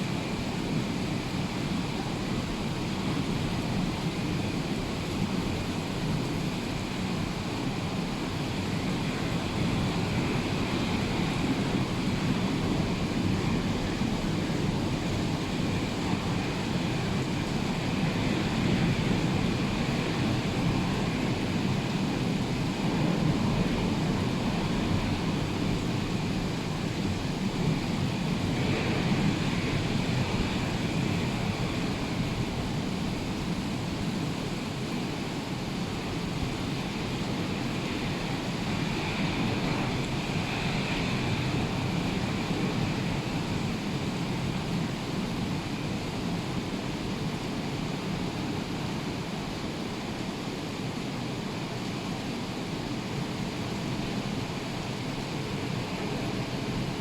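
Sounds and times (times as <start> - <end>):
rough sea surf breaking: 27.0 - 33.3.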